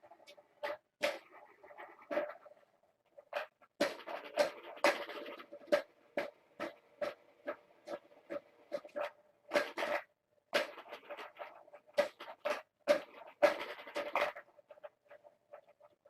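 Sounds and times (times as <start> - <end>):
kittens' claws scratching and pattering: 0.1 - 16.0.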